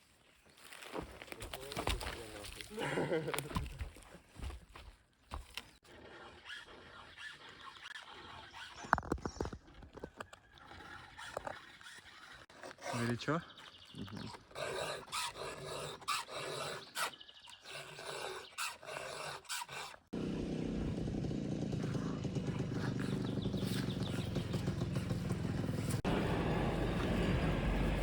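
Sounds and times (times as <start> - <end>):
chainsaw engine running: 20.1 - 28.0.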